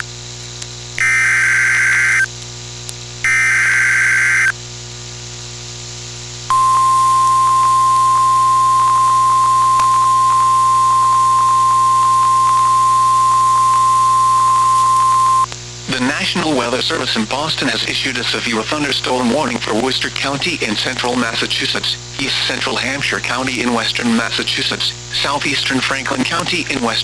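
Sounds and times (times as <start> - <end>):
static crackles: 0.0 - 27.0
screeching data bursts: 1.0 - 2.3, 3.2 - 4.6, 6.5 - 15.5
weather radio alarm tone: 1.0 - 2.3, 3.2 - 4.6, 6.5 - 15.5.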